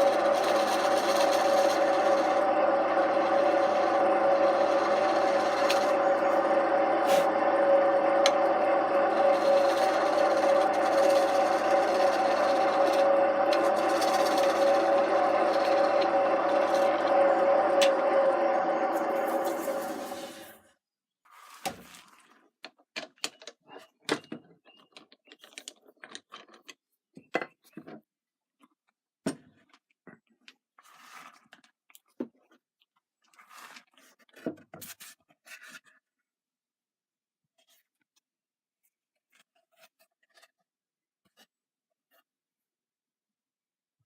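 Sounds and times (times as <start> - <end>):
turning tool scraping wood: 0.0 - 20.6
wood lathe humming: 0.0 - 20.6.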